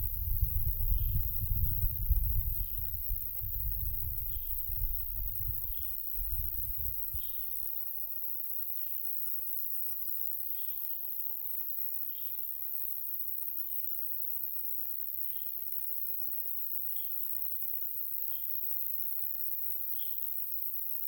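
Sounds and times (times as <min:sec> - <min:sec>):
wind rumble on microphone: 0:00.0 - 0:07.5
insect buzz: 0:00.0 - 0:21.0.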